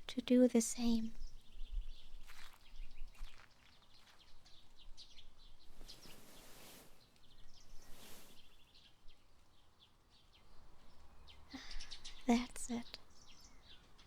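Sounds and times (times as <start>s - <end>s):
faint birds chirping: 0.0s - 14.0s
soft rustling: 2.2s - 8.9s.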